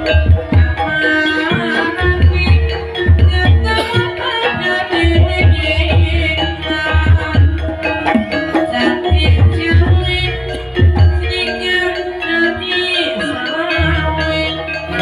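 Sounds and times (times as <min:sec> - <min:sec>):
hand drum strokes: 0:00.0 - 0:11.8
ringing metallophone tones: 0:00.0 - 0:15.0.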